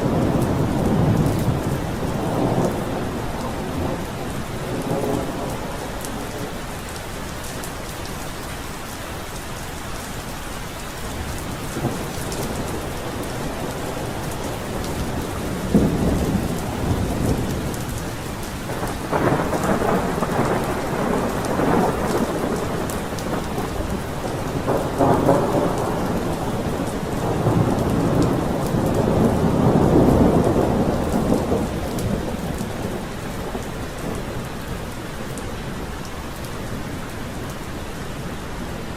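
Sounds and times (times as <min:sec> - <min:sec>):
rolling thunder: 0:00.0 - 0:06.5, 0:11.7 - 0:34.8
steady rain falling: 0:00.0 - 0:38.9.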